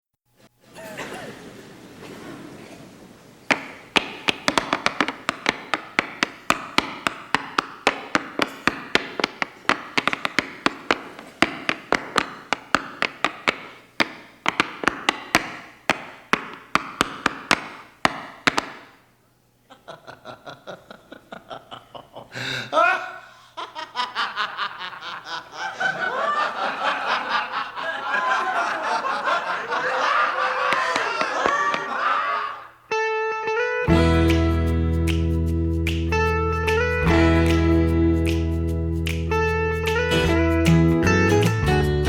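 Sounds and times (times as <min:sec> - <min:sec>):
tap shoes on hard floor: 0:03.5 - 0:19.0, 0:30.6 - 0:32.0.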